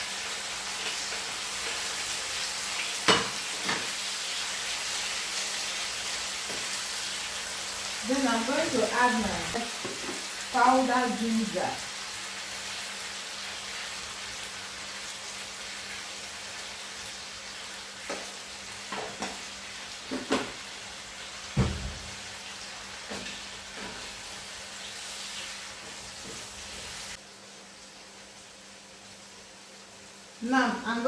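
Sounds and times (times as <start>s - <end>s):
vegetables sizzling in oil: 0.0s - 31.0s
spoon knocking and scraping pan: 3.0s - 4.0s, 6.4s - 6.8s, 9.7s - 10.3s, 18.1s - 19.5s, 20.1s - 20.6s.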